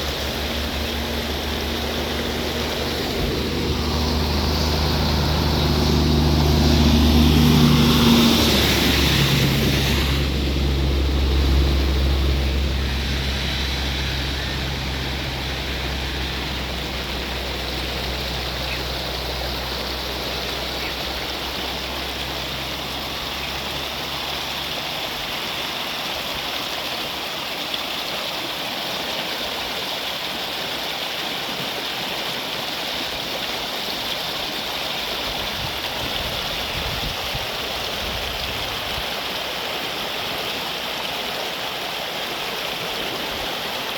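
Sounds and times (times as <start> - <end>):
low engine hum: 0.0 - 27.4
flowing water rushing: 0.0 - 43.9.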